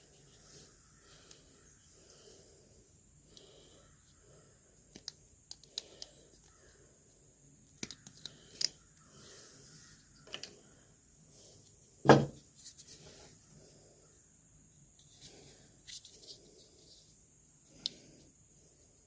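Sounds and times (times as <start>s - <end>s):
small clicks and rustles of wiring: 4.8s - 6.8s, 7.6s - 9.1s, 10.0s - 10.6s.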